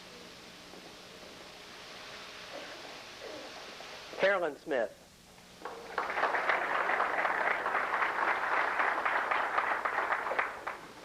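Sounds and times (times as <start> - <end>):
audience applauding: 5.6 - 11.0.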